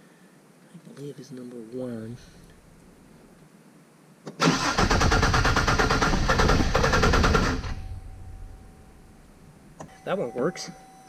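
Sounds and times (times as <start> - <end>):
engine cranking on starter motor: 4.3 - 8.6.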